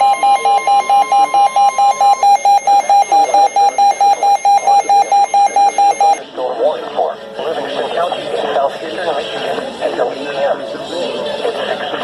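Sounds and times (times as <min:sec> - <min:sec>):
alarm radio beeping rapidly: 0:00.0 - 0:06.2
steady high warning tone: 0:00.0 - 0:06.2.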